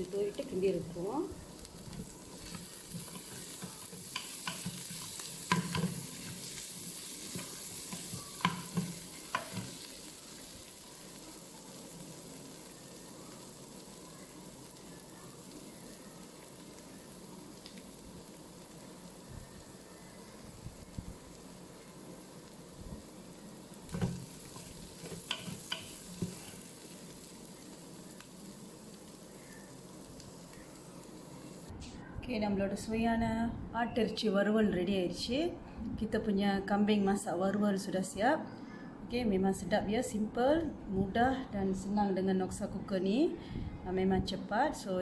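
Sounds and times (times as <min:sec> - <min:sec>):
meat sizzling in a pot: 0:00.0 - 0:31.7.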